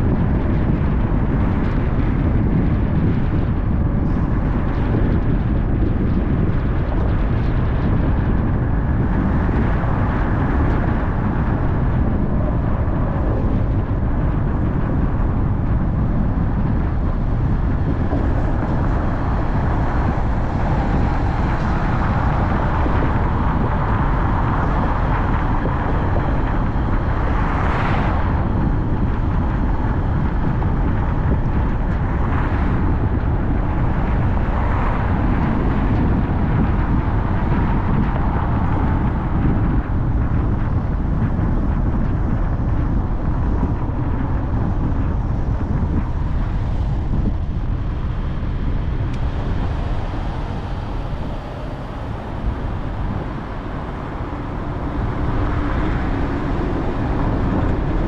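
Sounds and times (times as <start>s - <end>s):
road and tyre noise: 0.0s - 58.0s
car engine hum: 45.2s - 58.0s.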